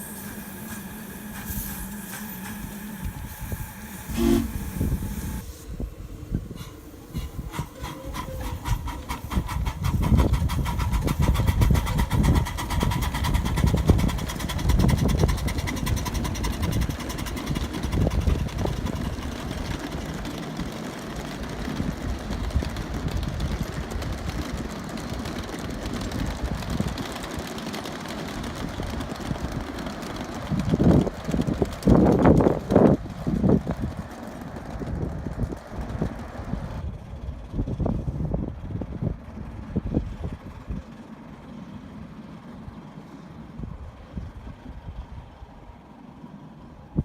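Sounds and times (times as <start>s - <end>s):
steam locomotive chuffing: 0.0s - 47.0s
train cars rumbling on track: 0.0s - 47.0s.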